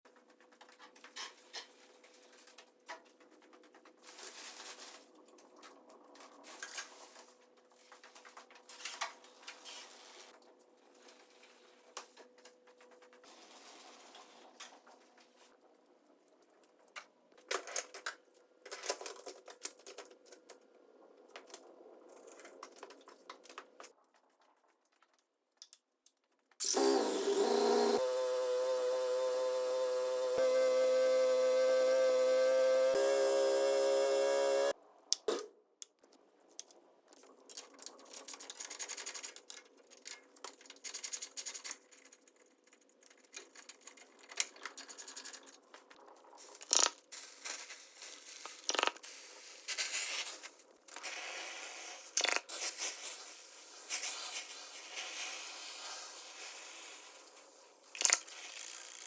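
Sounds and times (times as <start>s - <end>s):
loud steady tones: 27.2s - 34.7s
faint clicks and metallic clatter: 35.8s - 47.1s.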